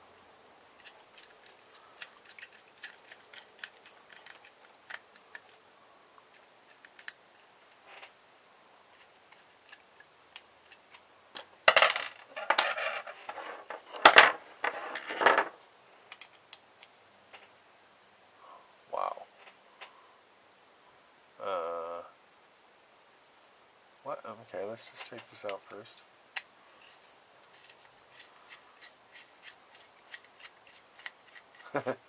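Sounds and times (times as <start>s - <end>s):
small metal parts clicking: 0.8s - 5.6s.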